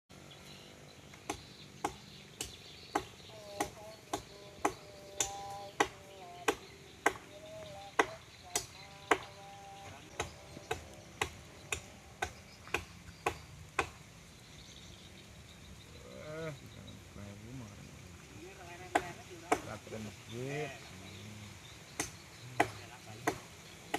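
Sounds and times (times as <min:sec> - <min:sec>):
blade chopping tree branch: 0:01.2 - 0:07.3, 0:10.1 - 0:14.1.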